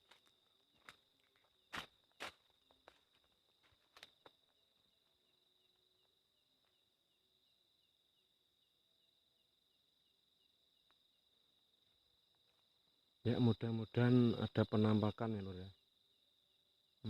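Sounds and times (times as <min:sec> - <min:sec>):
cricket trill: 0:00.0 - 0:17.0.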